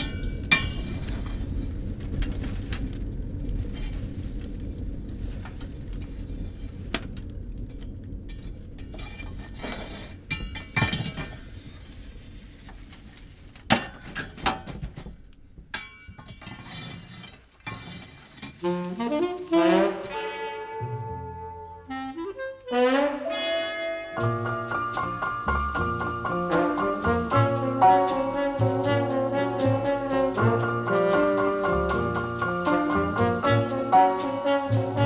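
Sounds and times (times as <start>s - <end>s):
low hum: 0.0s - 13.2s
clinks and knocks of hard objects: 7.7s - 11.6s
music: 18.6s - 35.0s.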